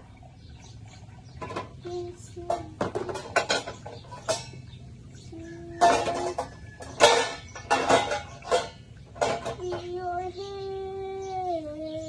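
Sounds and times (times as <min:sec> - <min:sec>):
dishes and cutlery clattering: 0:01.4 - 0:01.8, 0:02.4 - 0:04.7, 0:05.7 - 0:09.9.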